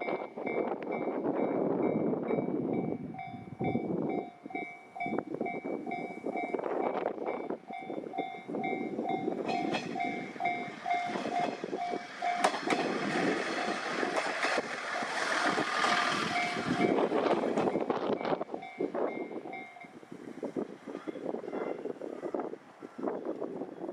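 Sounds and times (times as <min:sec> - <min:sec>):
train passing: 0:00.0 - 0:23.5
wind buffeting microphone: 0:00.0 - 0:23.9
wheels clicking over rail joints: 0:07.2 - 0:19.9.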